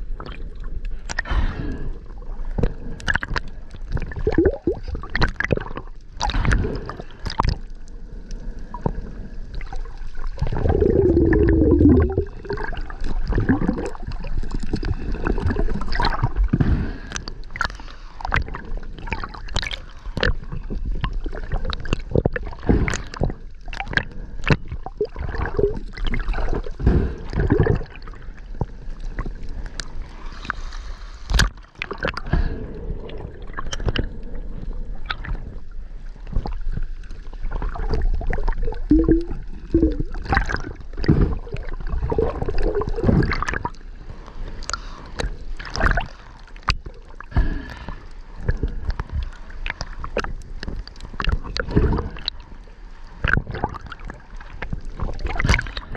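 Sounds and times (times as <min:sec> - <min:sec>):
gurgling air bubbles: 0:00.0 - 0:07.7, 0:08.7 - 0:29.7, 0:37.4 - 0:43.8, 0:44.6 - 0:47.8, 0:48.4 - 0:52.4, 0:53.2 - 0:54.2
sharp clicks and knocks underwater: 0:02.5 - 0:07.7, 0:08.8 - 0:34.2, 0:35.0 - 0:35.6, 0:36.2 - 0:43.8, 0:44.5 - 0:52.4, 0:53.2 - 0:55.9.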